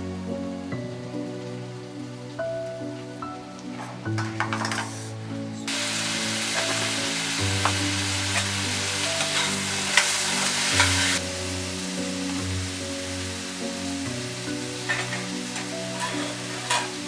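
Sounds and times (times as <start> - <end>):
soft background music: 0.0 - 17.0
food sizzling in a pan: 5.7 - 17.0.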